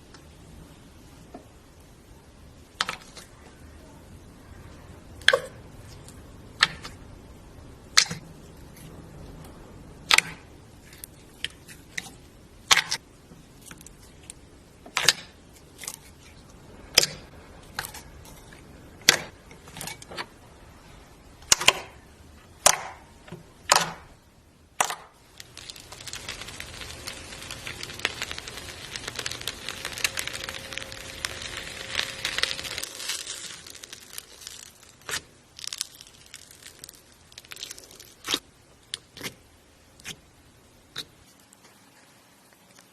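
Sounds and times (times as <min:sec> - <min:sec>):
slime popping: 0:24.8 - 0:38.4
slime crackling: 0:24.8 - 0:39.4.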